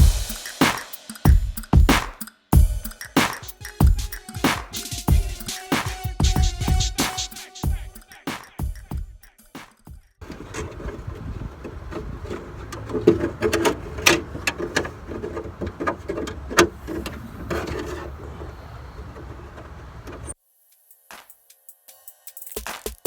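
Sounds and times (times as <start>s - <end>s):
sharp clicks and knocks: 10.2s - 20.4s
wire scraping inside sheet metal: 10.2s - 20.4s.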